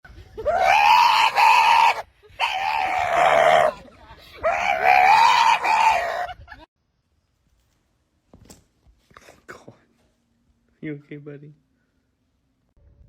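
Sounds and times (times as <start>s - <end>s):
dog screaming cries: 0.5s - 3.8s, 4.4s - 6.3s.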